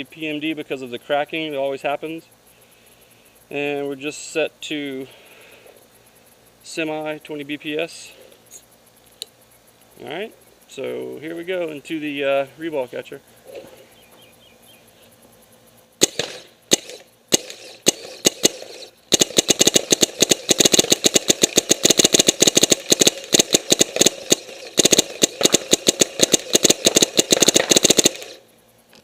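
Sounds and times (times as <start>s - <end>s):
paintball marker firing: 16.0s - 28.4s.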